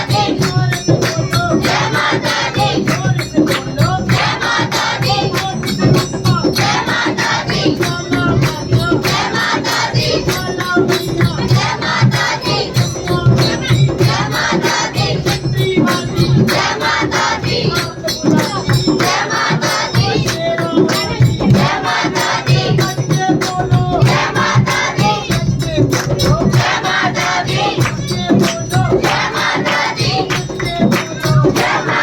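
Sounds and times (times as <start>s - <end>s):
group of voices chanting: 0.0s - 10.5s, 11.2s - 15.4s, 24.0s - 30.4s, 31.5s - 32.0s
jingling percussion beat: 0.0s - 32.0s.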